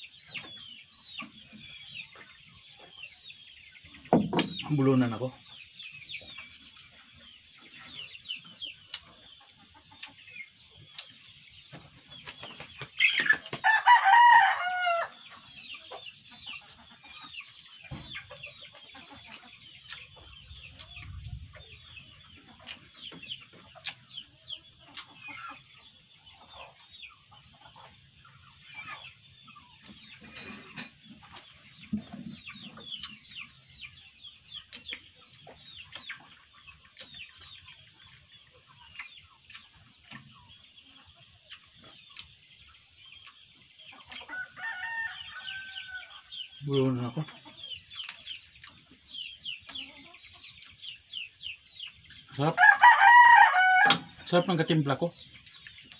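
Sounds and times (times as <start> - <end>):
chickens chirping and clucking: 0.0 - 55.9
rooster crowing: 13.6 - 15.2, 44.3 - 46.2, 52.5 - 54.1.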